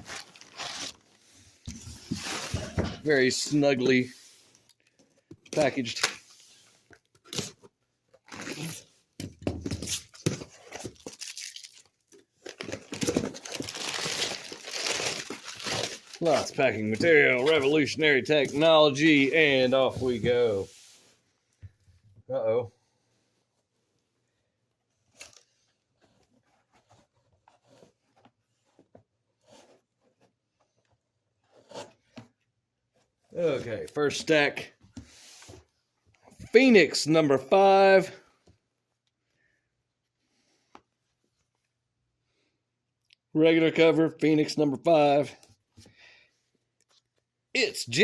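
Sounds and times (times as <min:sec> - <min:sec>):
packing material crinkling: 0:09.9 - 0:17.8.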